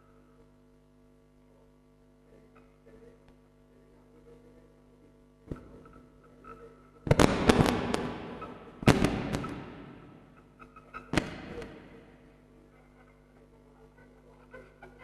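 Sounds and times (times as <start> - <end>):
sharp bangs with ringing decays: 7.1 - 10.4.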